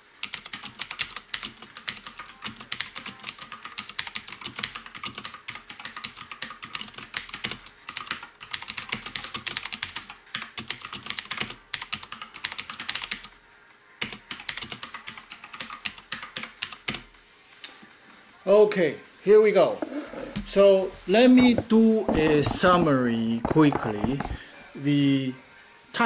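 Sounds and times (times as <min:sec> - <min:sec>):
mechanical keyboard typing: 0:00.2 - 0:13.3, 0:14.0 - 0:17.1, 0:22.1 - 0:24.4.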